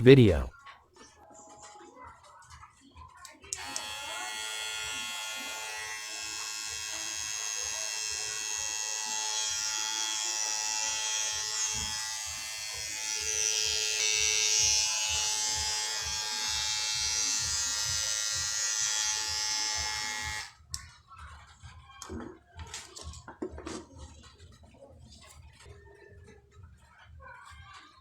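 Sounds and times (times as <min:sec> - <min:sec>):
hair trimmer buzzing: 0:03.6 - 0:20.5.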